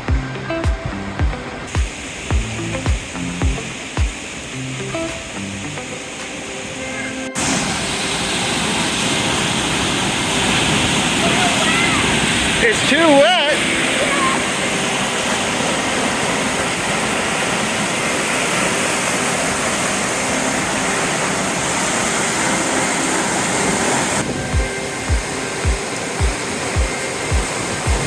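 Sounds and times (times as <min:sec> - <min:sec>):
music with kick drum beat: 0:00.0 - 0:04.2, 0:24.5 - 0:28.0
waterfall roaring: 0:00.0 - 0:28.0.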